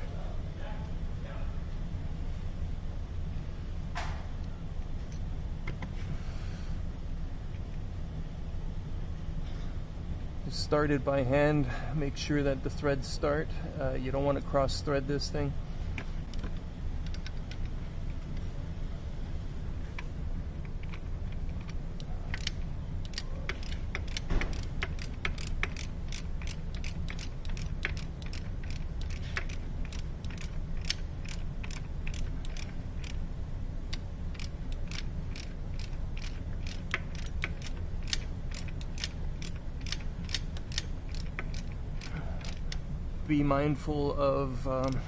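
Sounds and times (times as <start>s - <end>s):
steady low hum: 0.0s - 45.0s
ratchet wrench clicking: 20.0s - 33.3s, 33.9s - 42.8s, 44.8s - 45.0s.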